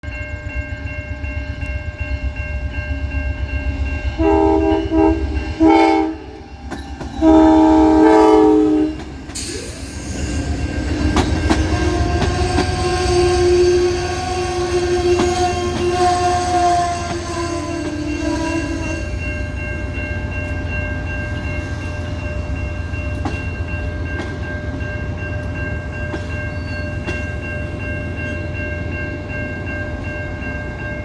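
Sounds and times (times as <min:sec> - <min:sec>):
train wheels clattering on rails: 0:00.3 - 0:31.0
train horn blasts: 0:04.1 - 0:09.3, 0:11.6 - 0:19.2.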